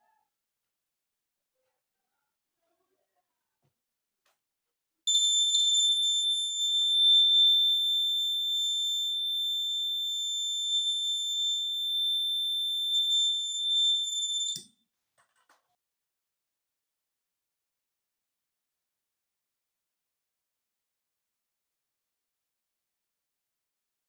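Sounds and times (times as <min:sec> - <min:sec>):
high-pitched buzzer tone: 0:05.1 - 0:14.6.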